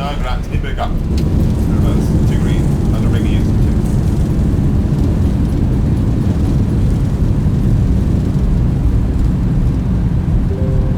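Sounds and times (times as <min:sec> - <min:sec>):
airliner cockpit low rumble: 0:00.0 - 0:10.9.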